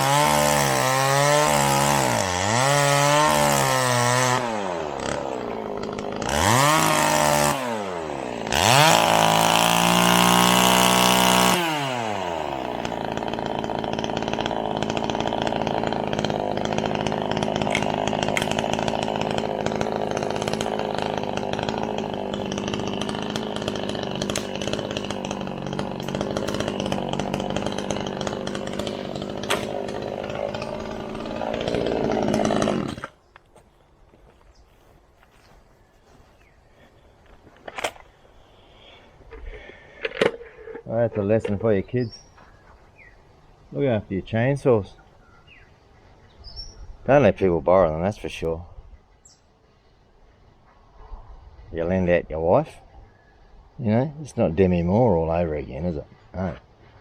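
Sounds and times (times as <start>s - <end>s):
chainsaw revving: 0.0s - 33.2s, 37.4s - 41.9s.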